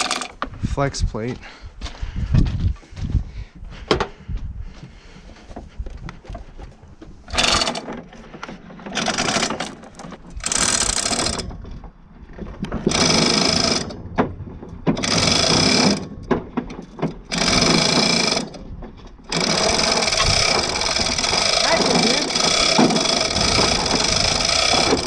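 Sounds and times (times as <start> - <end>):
metal ratchet cranking: 0.0 - 0.4, 7.3 - 7.9, 8.9 - 11.5, 12.9 - 14.0, 15.0 - 16.2, 17.2 - 18.6, 19.3 - 25.0.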